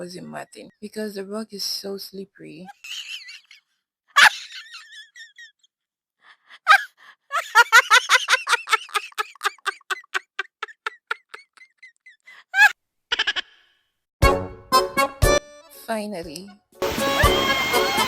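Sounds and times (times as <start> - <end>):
high-pitched cackling laughter: 2.7 - 5.7, 6.6 - 13.7.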